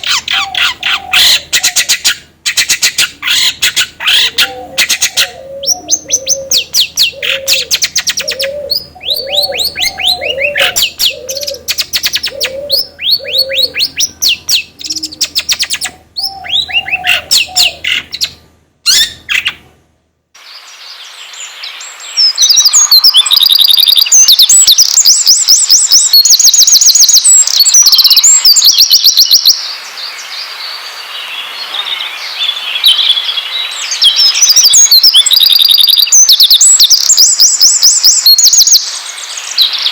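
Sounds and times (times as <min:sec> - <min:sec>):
recorded songbirds singing: 0:00.0 - 0:19.7, 0:20.4 - 0:39.9
steady hiss: 0:20.4 - 0:22.8, 0:29.5 - 0:34.2, 0:38.8 - 0:39.9
fast high bird trills: 0:32.5 - 0:39.9.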